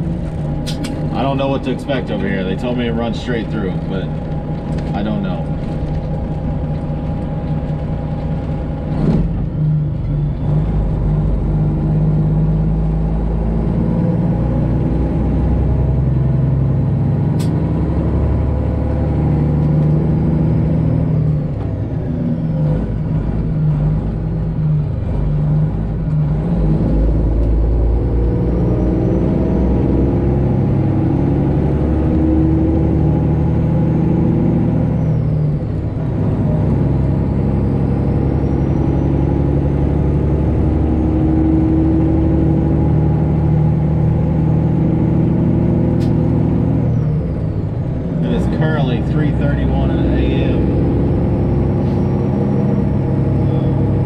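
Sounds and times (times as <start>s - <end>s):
truck diesel engine shifting gears: 0.0s - 54.0s
sharp click: 0.6s - 1.0s, 17.4s - 17.6s, 46.0s - 46.2s.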